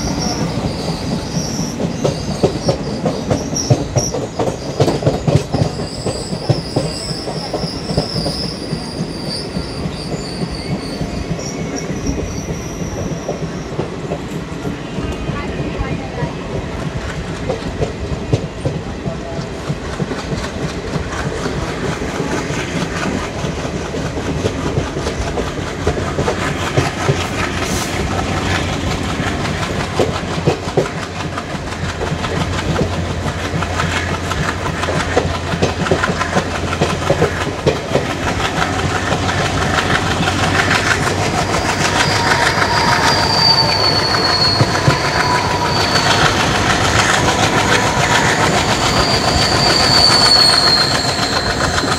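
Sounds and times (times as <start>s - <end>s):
train wheels clickety-clack: 0.0s - 51.9s
high-pitched drawn-out tone: 41.6s - 46.6s.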